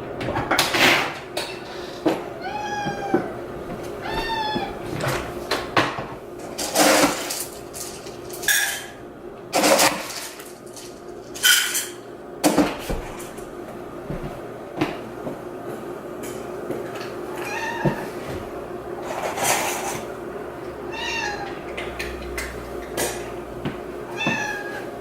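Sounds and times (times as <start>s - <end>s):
cat meowing: 2.4s - 3.4s, 4.0s - 4.8s, 17.4s - 18.1s, 20.9s - 21.6s, 24.1s - 24.9s
cupboard doors and dishes clinking: 24.2s - 24.8s.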